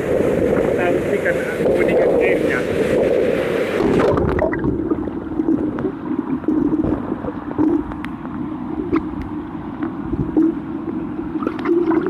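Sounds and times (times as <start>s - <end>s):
underwater rushing and gurgling: 0.0s - 12.0s.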